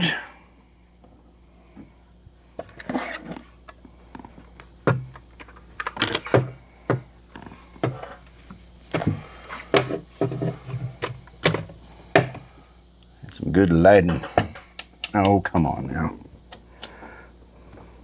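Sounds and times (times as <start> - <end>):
metallic clicks and knocks of tools: 14.8 - 15.4.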